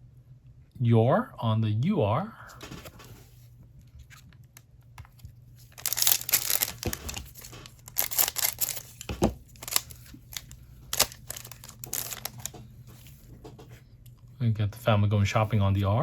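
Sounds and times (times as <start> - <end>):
foil wrapper tearing and crinkling: 5.6 - 12.6.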